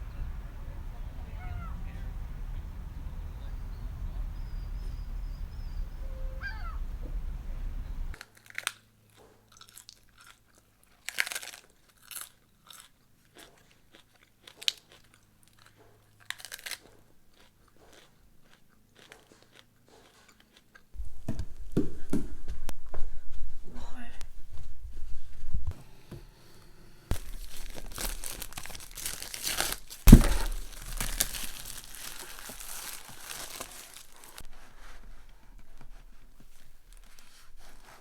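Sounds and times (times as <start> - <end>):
low steady rumble: 0.0 - 8.2
crisp crunches and clicks: 8.1 - 8.8, 9.5 - 20.8, 27.1 - 38.0.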